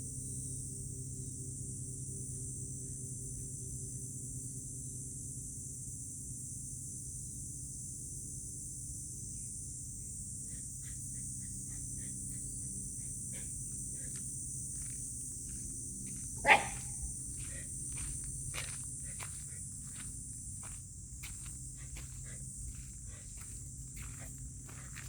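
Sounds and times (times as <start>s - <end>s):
dog barking: 13.0s - 14.2s, 16.4s - 17.6s.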